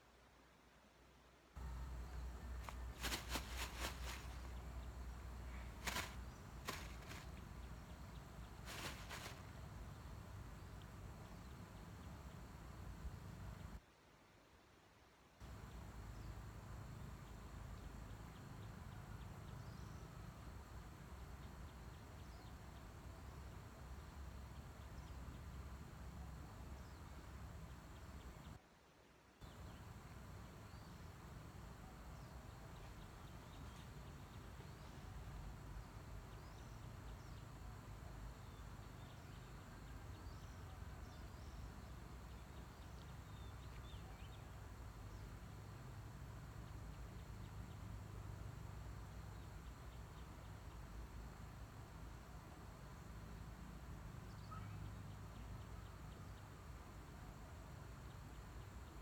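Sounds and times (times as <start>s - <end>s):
faint insect chirps: 1.6s - 13.8s, 29.4s - 59.0s.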